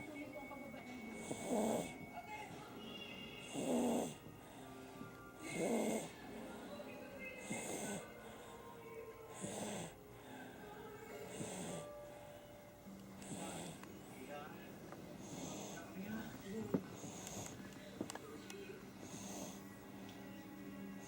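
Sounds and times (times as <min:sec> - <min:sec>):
baby snoring: 0:01.2 - 0:02.1, 0:03.4 - 0:04.3, 0:05.4 - 0:06.4, 0:07.4 - 0:08.5, 0:09.3 - 0:10.0, 0:11.1 - 0:11.9, 0:13.2 - 0:13.8, 0:15.1 - 0:16.3, 0:17.0 - 0:17.6, 0:19.0 - 0:19.6.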